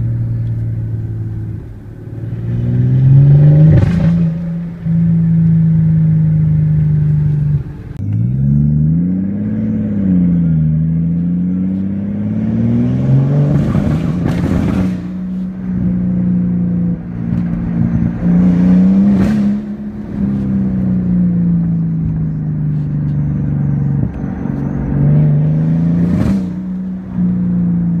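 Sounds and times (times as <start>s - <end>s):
car engine revving under load: 0.0s - 28.0s.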